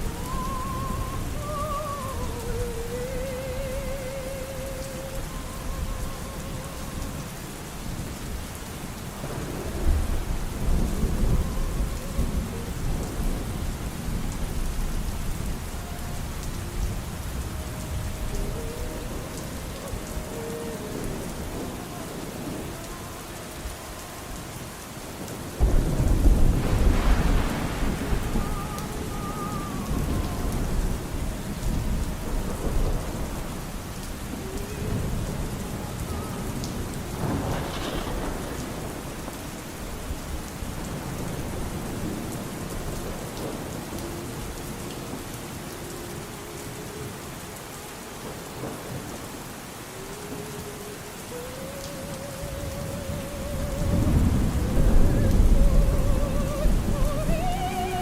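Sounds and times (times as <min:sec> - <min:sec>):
steady rain: 0:00.0 - 0:58.0
thunder rolling: 0:07.9 - 0:23.0, 0:25.6 - 0:44.0, 0:51.3 - 0:58.0.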